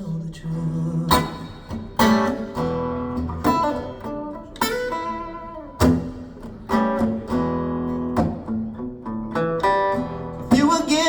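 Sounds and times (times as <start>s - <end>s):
plucked guitar chords: 0.4s - 11.0s
person singing: 10.5s - 11.0s.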